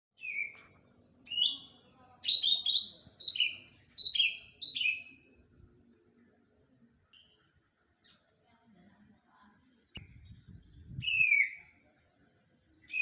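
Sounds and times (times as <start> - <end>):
bird singing whistled notes: 0.2 - 0.6, 1.3 - 1.7, 2.3 - 5.2, 10.0 - 11.7.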